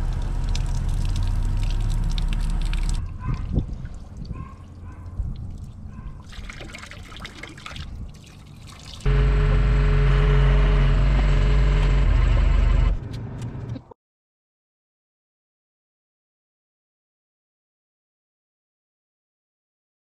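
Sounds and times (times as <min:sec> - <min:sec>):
excavator engine running: 0:00.0 - 0:03.0, 0:09.1 - 0:13.9
water trickling and dripping: 0:00.0 - 0:09.1.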